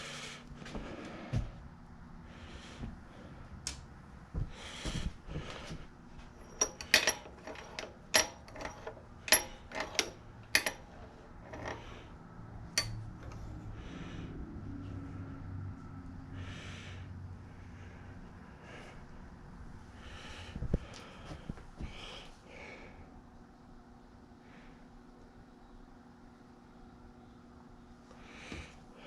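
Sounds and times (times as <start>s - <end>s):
metal tools clinking: 6.4s - 12.0s, 12.8s - 13.5s.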